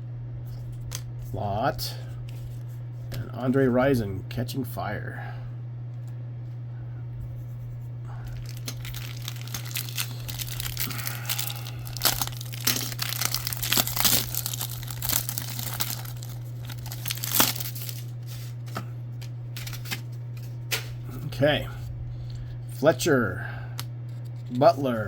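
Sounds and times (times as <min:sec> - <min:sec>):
plastic wrapper crinkling: 0:08.2 - 0:20.4.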